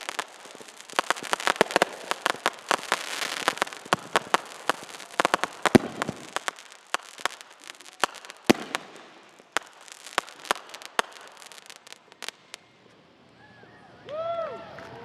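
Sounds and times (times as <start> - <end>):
loud firework bang: 0.0 - 7.3
fireworks crackling: 0.0 - 13.3.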